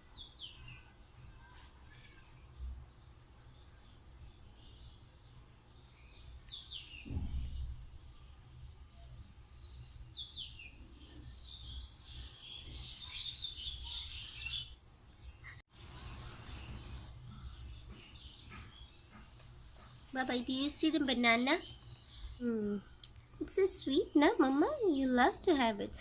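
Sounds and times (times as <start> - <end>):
low thump: 7.0 - 7.8.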